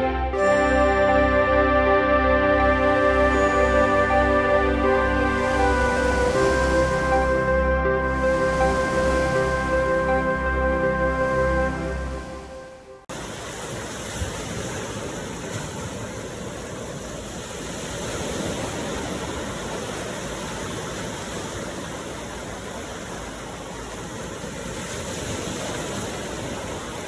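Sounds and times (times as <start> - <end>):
ocean surf: 0.0 - 27.0.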